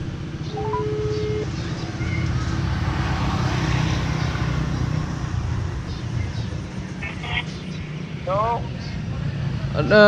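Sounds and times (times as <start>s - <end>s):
motor engine running: 0.0s - 3.3s.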